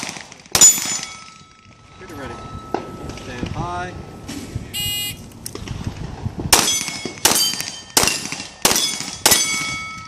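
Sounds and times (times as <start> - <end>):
steel target ringing: 0.6 - 3.7, 6.6 - 10.0
shot timer beep: 4.8 - 5.2
pistol shots: 6.5 - 9.8.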